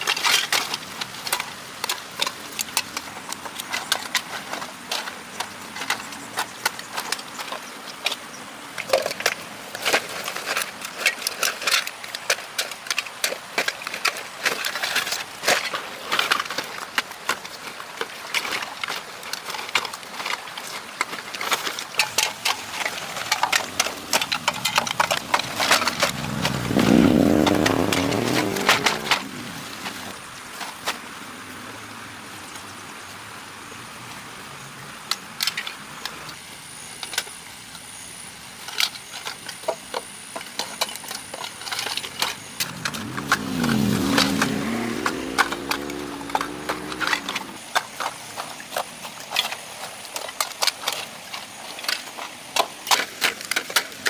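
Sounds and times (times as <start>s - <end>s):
cracking and snapping: 8.8s - 30.2s, 40.6s - 49.6s.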